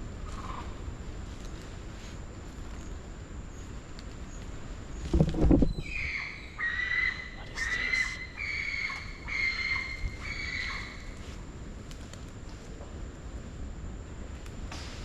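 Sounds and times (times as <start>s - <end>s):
monkey high calls: 5.8s - 11.2s.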